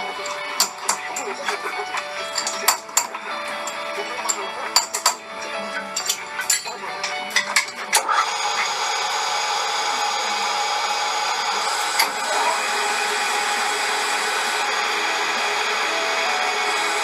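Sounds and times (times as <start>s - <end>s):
lathe running whine: 7.0s - 17.0s.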